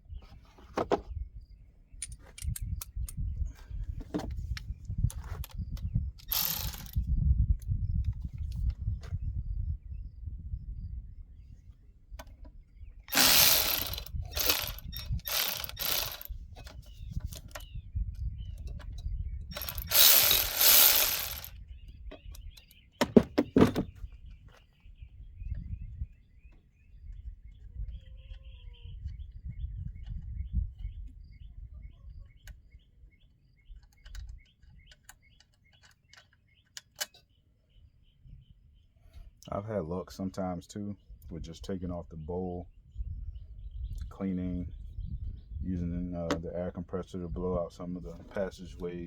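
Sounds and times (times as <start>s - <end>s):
clicks and handling knocks: 22.1s - 24.6s.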